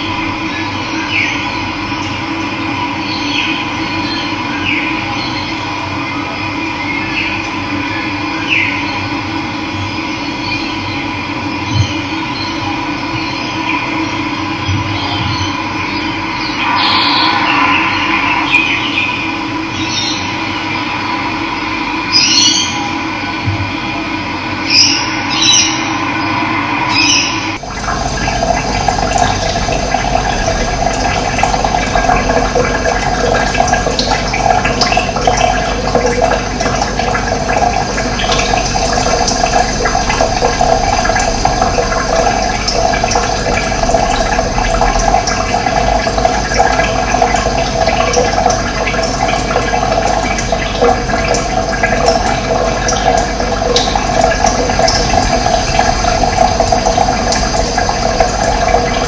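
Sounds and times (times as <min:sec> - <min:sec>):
water rushing: 0:16.1 - 0:22.3, 0:24.7 - 0:59.0.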